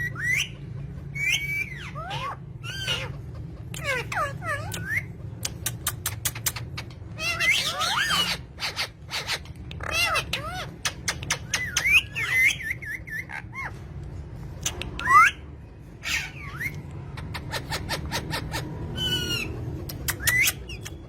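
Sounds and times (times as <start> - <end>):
parrots chirping and squawking: 0.0 - 21.0
sharp clicks: 4.7 - 6.8.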